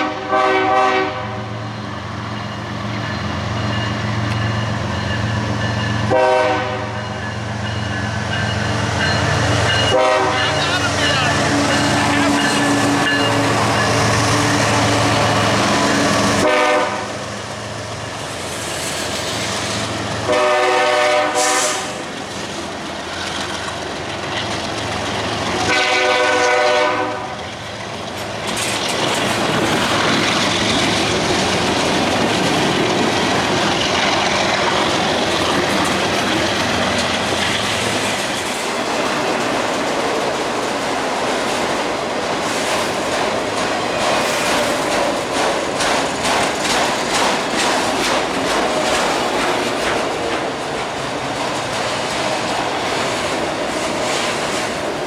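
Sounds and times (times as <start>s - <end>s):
locomotive air horn blasts: 0.0s - 1.5s, 6.1s - 7.0s, 9.9s - 13.5s, 16.3s - 17.2s, 20.3s - 22.0s, 25.7s - 27.4s
train rumbling past: 0.0s - 55.0s
wheels clattering over rails: 27.4s - 55.0s.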